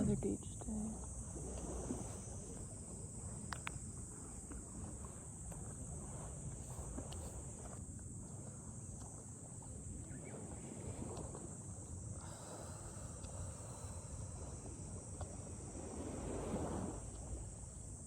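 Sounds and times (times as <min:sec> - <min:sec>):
insects chorus: 0:00.0 - 0:18.0
faint clicks: 0:12.2 - 0:14.0.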